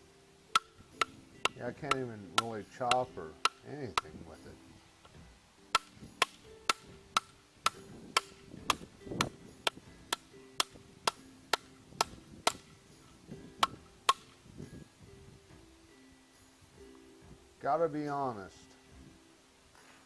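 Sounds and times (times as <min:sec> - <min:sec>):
knife chopping wood: 0:00.6 - 0:04.2, 0:05.8 - 0:09.3, 0:10.1 - 0:12.7.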